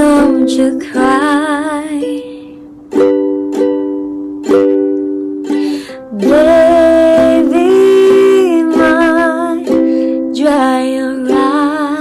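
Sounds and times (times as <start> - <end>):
woman singing: 0.0 - 2.5, 5.9 - 12.0
ukulele chords strummed: 0.0 - 12.0.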